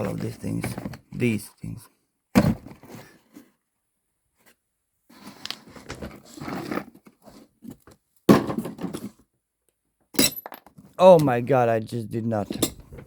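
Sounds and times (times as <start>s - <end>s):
small parts rustling and scraping: 4.4s - 9.3s
glass dropping and breaking: 10.2s - 10.7s.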